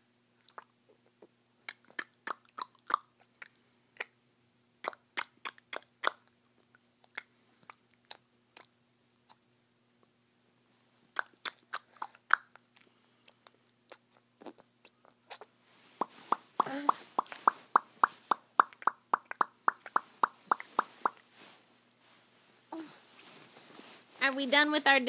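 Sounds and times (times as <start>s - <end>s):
child making mouth clicks: 16.6s - 20.9s.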